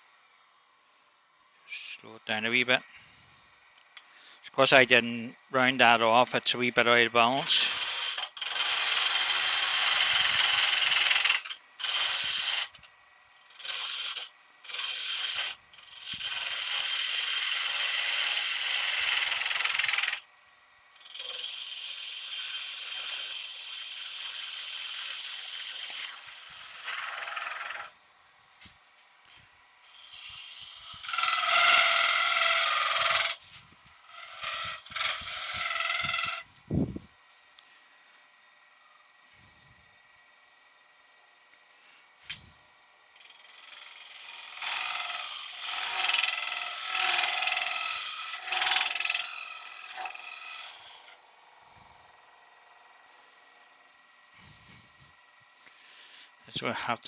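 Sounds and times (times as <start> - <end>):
lathe tool scraping wood: 2.3 - 20.3, 20.9 - 28.7, 29.3 - 36.7, 41.7 - 56.6.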